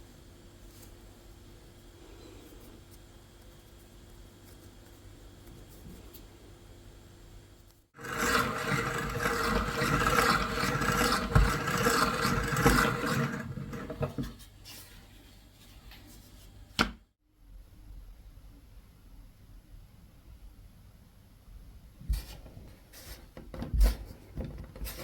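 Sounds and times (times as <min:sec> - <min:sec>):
pasta machine rolling dough: 0:08.0 - 0:14.4.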